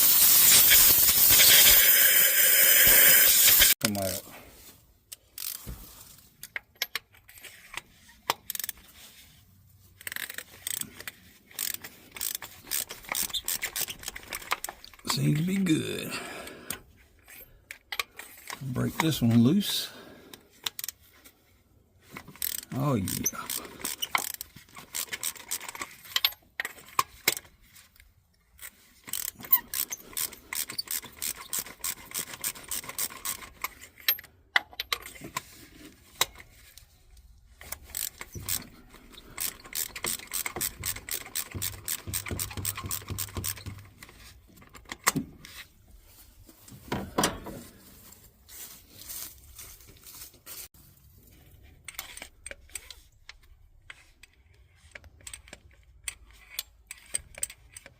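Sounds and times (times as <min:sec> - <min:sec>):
socket ratchet clicking: 0:00.0 - 0:03.7, 0:10.0 - 0:14.8, 0:29.1 - 0:35.0, 0:37.6 - 0:44.1.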